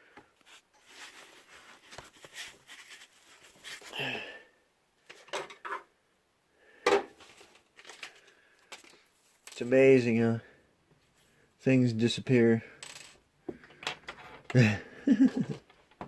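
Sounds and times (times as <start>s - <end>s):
objects rustling on work surface: 0.4s - 4.0s, 7.1s - 9.6s.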